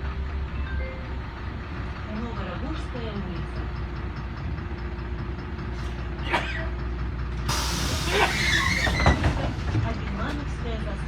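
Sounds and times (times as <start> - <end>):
bus engine rumble: 0.0 - 11.0
pneumatic air hiss: 7.5 - 9.2.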